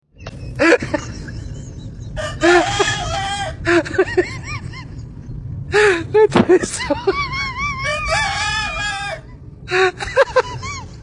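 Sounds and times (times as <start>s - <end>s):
rooster crowing: 2.2s - 3.7s, 7.7s - 9.4s.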